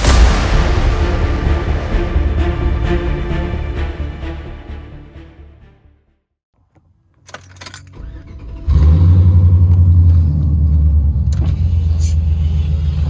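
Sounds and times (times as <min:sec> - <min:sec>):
keys jangling: 0:07.2 - 0:08.0
pickup truck engine starting: 0:07.9 - 0:13.0.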